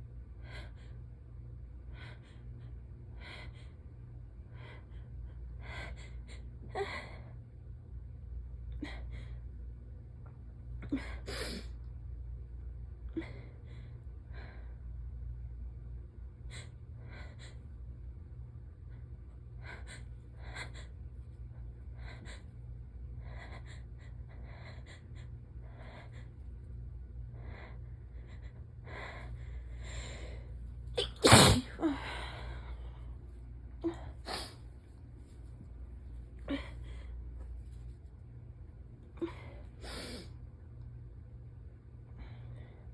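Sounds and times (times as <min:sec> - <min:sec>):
person sneezing: 0:31.0 - 0:32.0.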